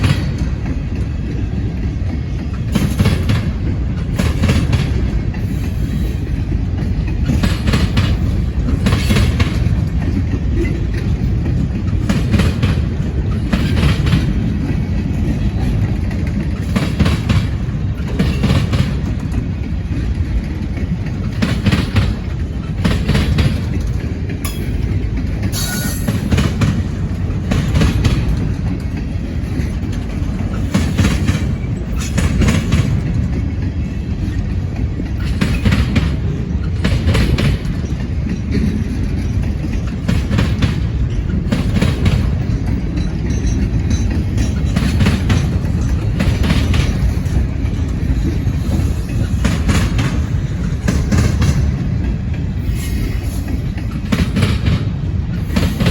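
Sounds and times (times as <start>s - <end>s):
rumble of train wheels on rail: 0.0s - 55.9s
wheels clacking on rail joints: 0.0s - 55.9s.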